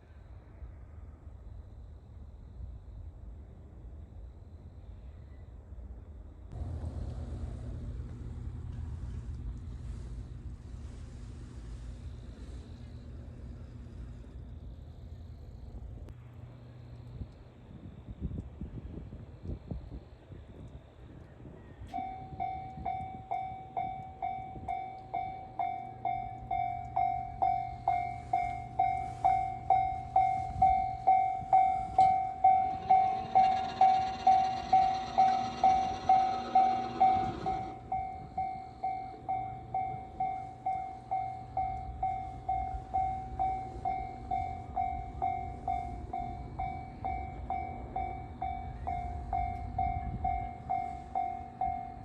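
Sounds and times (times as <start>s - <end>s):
train rushing past: 21.5s - 52.0s
level-crossing warning bell dinging: 21.9s - 52.0s.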